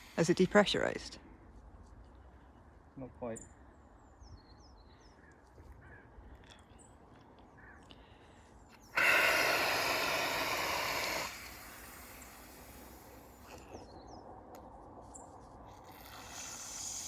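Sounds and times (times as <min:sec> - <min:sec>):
fire extinguisher hiss: 0:08.9 - 0:13.6, 0:15.9 - 0:17.0.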